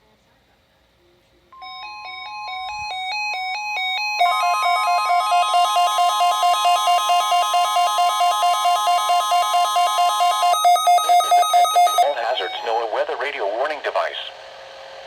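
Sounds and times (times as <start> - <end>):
steady warning alarm tone: 1.6 - 15.0
weather radios beeping: 4.1 - 14.3.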